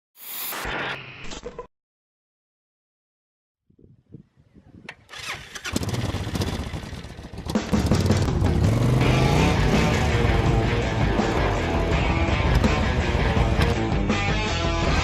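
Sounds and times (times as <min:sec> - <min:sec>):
vehicle engine starting and revving: 0:05.1 - 0:12.6.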